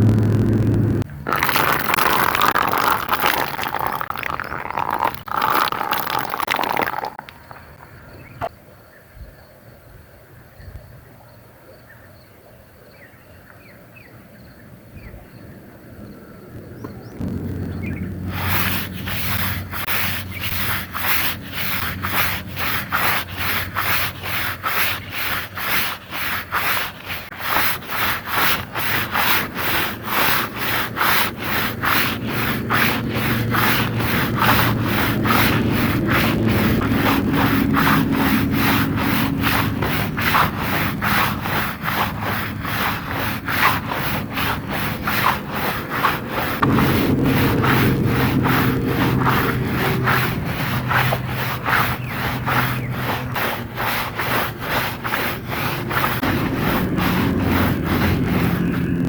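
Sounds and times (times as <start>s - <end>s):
steady low hum: 0.0s - 2.0s, 17.0s - 24.2s, 29.0s - 59.0s
wet carpet being scrubbed: 18.2s - 59.0s.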